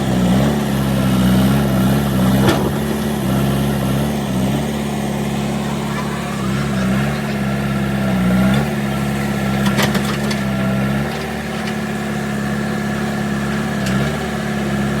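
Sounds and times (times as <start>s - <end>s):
diesel engine running: 0.0s - 15.0s
clatter of knocks: 9.5s - 12.0s.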